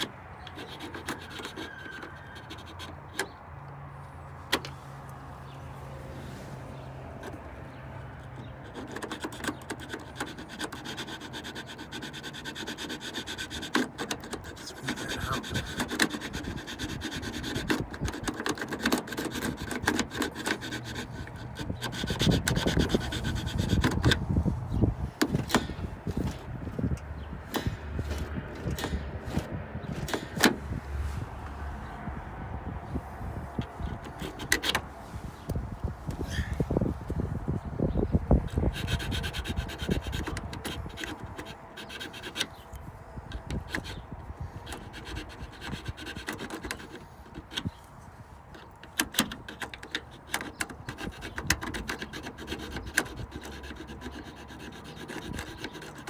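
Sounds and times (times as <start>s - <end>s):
hand file rasping on plastic: 0.0s - 3.4s, 8.2s - 24.3s, 33.6s - 34.9s, 38.4s - 47.9s, 48.5s - 56.0s.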